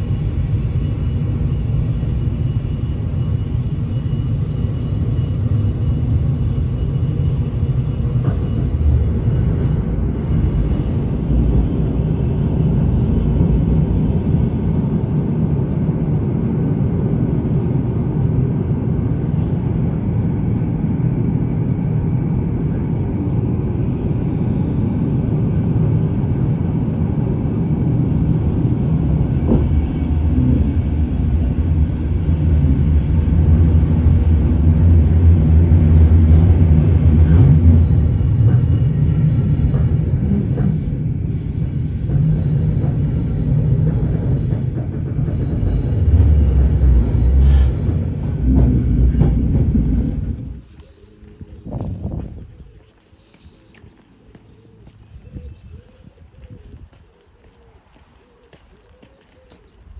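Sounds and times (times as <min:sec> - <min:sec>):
steady low rumble: 0:11.6 - 0:38.1.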